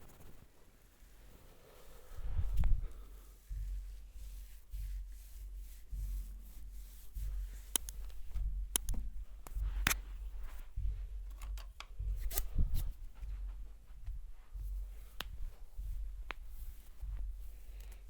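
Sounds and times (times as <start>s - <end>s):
hands rubbing a head: 0.0s - 18.0s
low rumble: 7.2s - 17.6s
sharp clicks and slaps: 7.7s - 10.1s, 15.2s - 15.4s.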